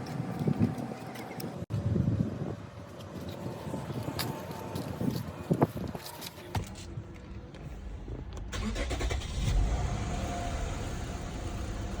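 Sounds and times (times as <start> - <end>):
car engine starting and running: 8.1 - 12.0.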